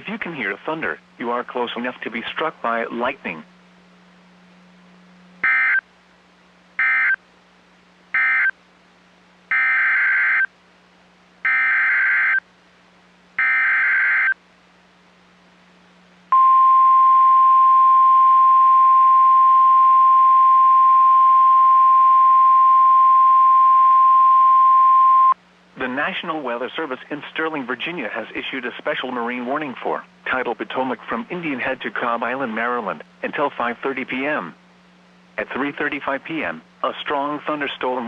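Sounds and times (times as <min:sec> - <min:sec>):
steady warning alarm tone: 0:08.2 - 0:08.5, 0:09.5 - 0:10.5, 0:11.5 - 0:12.4, 0:13.4 - 0:14.4.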